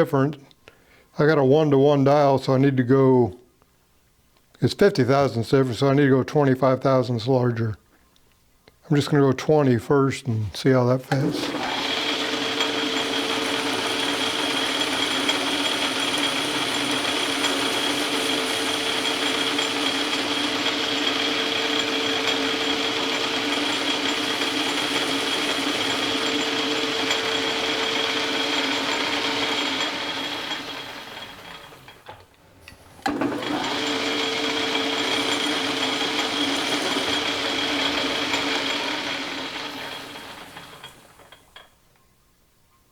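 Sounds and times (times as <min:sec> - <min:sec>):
metal lathe whining: 0:11.1 - 0:41.7.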